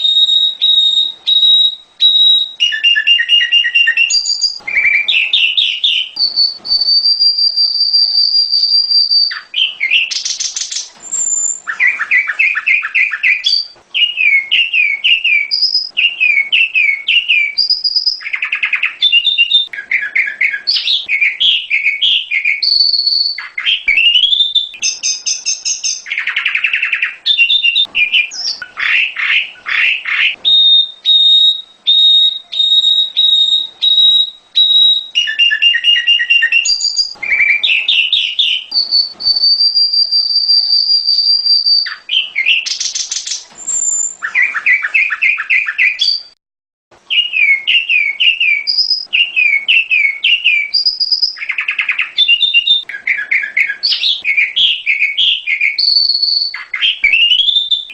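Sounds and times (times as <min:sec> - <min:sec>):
bird chirping: 0:00.0 - 0:46.4, 0:47.0 - 0:57.9
long high whistle: 0:06.2 - 0:09.4, 0:30.5 - 0:42.0.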